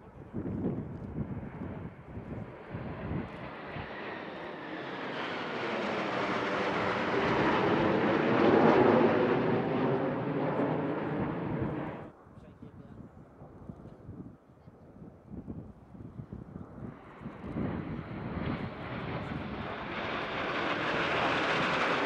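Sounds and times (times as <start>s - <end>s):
jet planes flying past: 1.2s - 12.4s, 16.4s - 22.0s
high jet whine: 3.1s - 12.1s, 18.4s - 22.0s.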